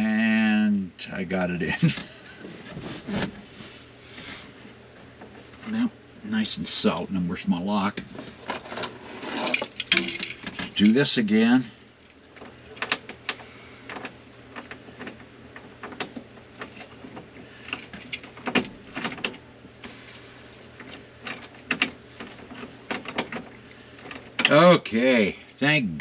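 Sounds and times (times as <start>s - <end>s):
small metallic clicks and rattles: 8.4s - 11.0s, 12.0s - 19.4s, 20.8s - 24.6s.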